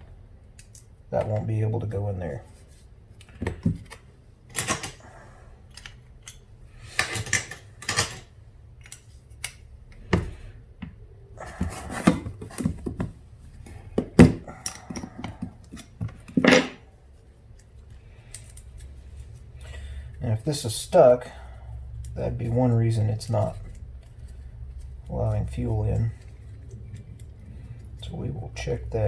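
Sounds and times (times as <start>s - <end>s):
hand tools clicking and tapping: 13.9s - 16.8s.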